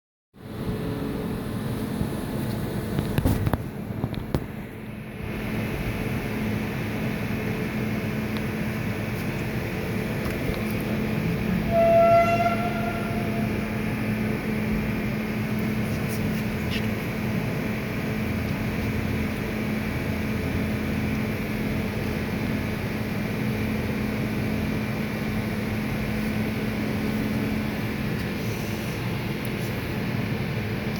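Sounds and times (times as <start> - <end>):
lathe machine hum: 4.6 - 30.9
high whistling tone: 11.7 - 13.7.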